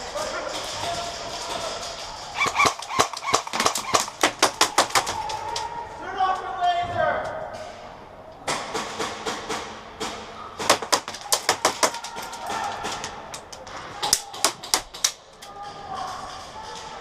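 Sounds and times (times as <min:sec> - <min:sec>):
airsoft guns firing: 0:00.6 - 0:05.7, 0:08.4 - 0:15.3.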